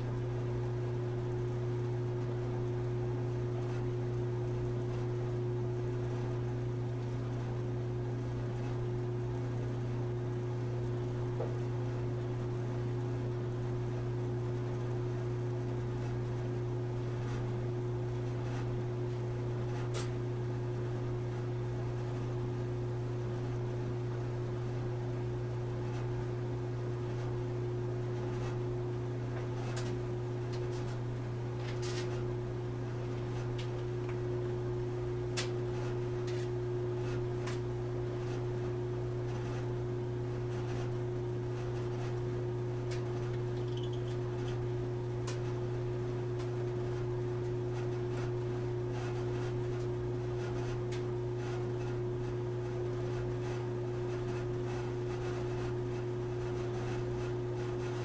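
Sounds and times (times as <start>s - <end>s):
clothes dryer buzzing: 25.4s - 58.0s.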